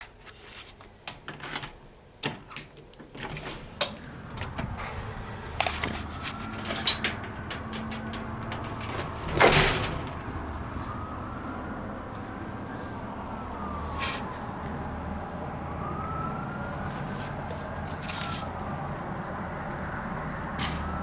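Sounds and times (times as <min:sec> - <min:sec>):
door clatter: 0:01.2 - 0:05.0, 0:05.7 - 0:10.4
faint distant siren: 0:04.0 - 0:21.0.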